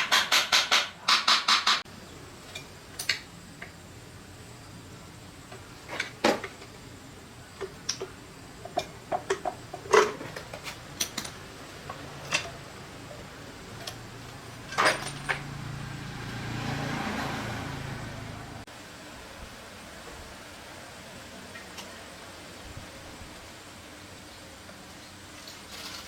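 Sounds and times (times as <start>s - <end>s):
tools and metal parts clicking: 7.6s - 15.8s.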